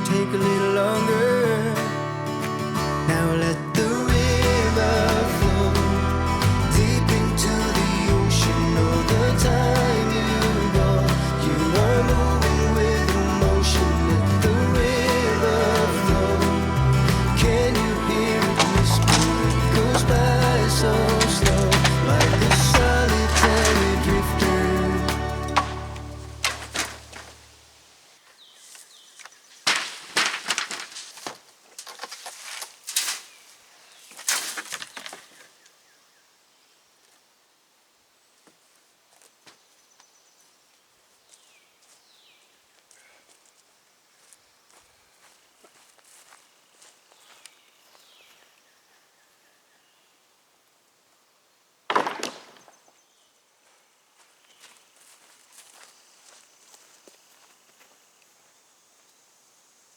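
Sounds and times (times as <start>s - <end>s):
faint outdoor ticks and rustles: 9.1s - 59.9s
wood crashing down: 17.1s - 27.6s, 29.6s - 33.2s, 51.9s - 52.7s
wooden deck boards cracking: 18.4s - 24.6s, 25.3s - 27.5s, 29.6s - 33.3s, 51.9s - 52.8s.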